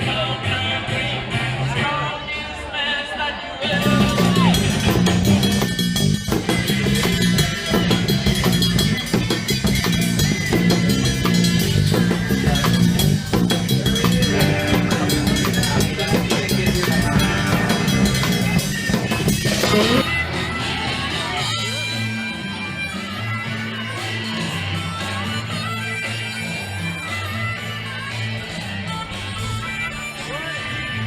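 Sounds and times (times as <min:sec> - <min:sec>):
surf rock band: 0:03.6 - 0:31.0
busy drum kit: 0:03.7 - 0:21.8
repeating bass line: 0:03.7 - 0:22.0.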